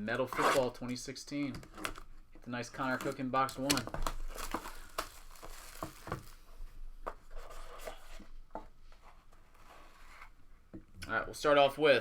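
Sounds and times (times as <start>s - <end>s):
wrapper tearing and crinkling: 2.9s - 6.4s.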